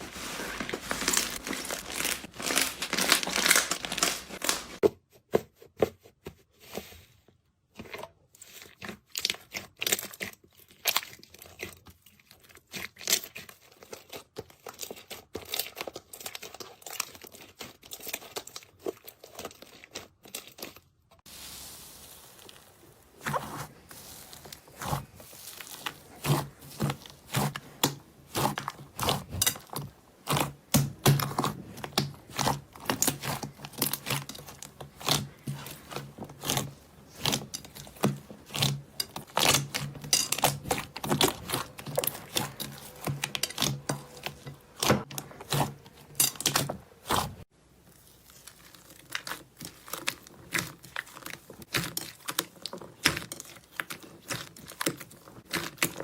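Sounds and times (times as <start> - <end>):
slime crackling and popping: 1.1 - 4.8, 21.4 - 56.0.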